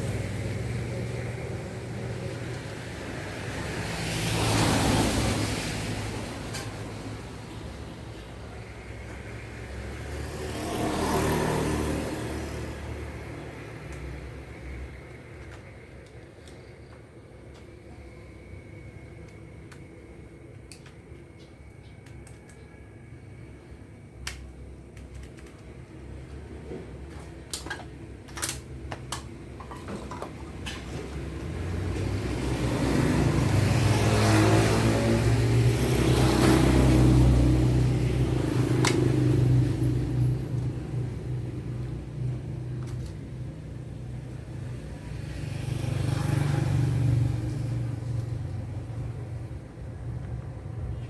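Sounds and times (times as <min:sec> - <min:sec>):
passing vehicle engine rumble: 0:00.0 - 0:19.9, 0:30.4 - 0:51.0
small clicks and taps of parts: 0:20.6 - 0:22.6, 0:24.2 - 0:25.9.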